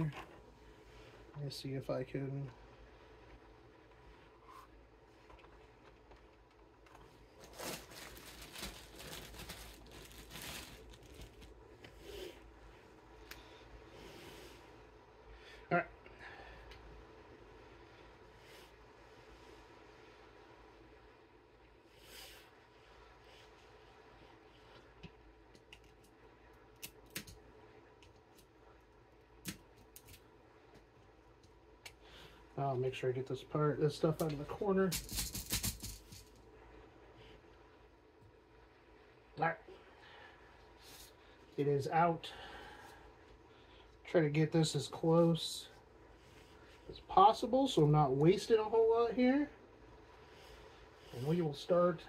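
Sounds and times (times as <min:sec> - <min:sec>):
window screen mesh crinkling: 0:06.9 - 0:12.4.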